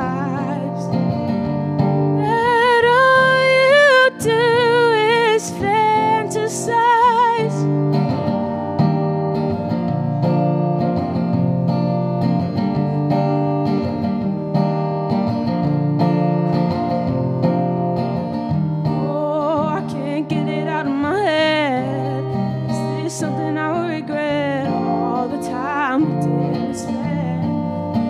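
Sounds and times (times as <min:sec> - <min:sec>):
person singing: 0:00.0 - 0:01.1, 0:02.2 - 0:07.8, 0:19.0 - 0:27.6
acoustic guitar strumming chords: 0:00.0 - 0:28.0.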